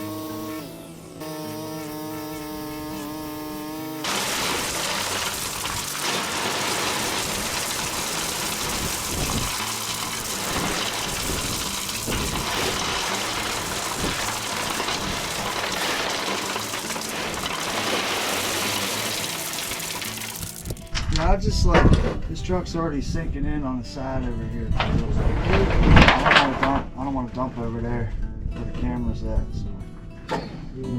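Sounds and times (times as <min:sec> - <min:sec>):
rocks pouring from truck bed: 0:04.0 - 0:21.0.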